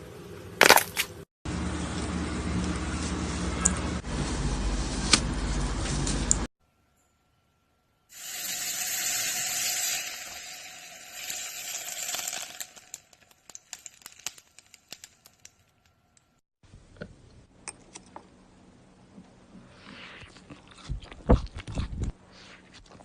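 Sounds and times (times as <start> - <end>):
slime crackling and popping: 11.6 - 15.8.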